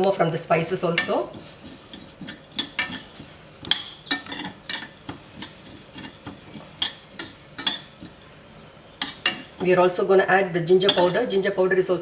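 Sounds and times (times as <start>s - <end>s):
spoon scraping and clinking in pot: 0.6s - 8.4s, 9.0s - 9.8s, 10.9s - 11.4s.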